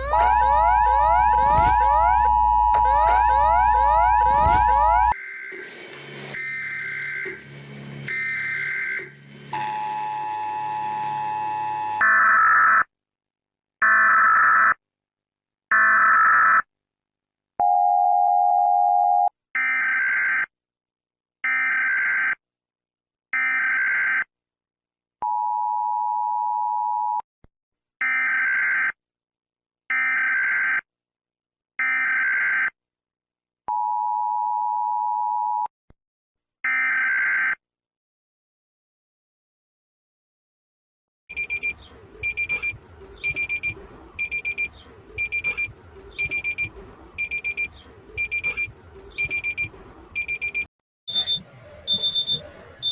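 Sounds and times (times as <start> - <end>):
steady alert tone: 0.0 - 5.2, 41.3 - 52.9.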